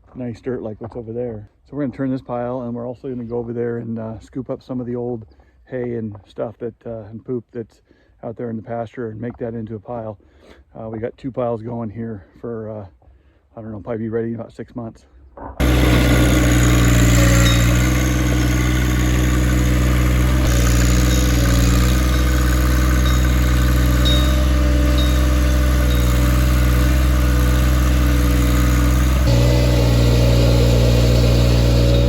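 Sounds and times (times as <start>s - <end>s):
tractor engine running: 15.6s - 32.0s.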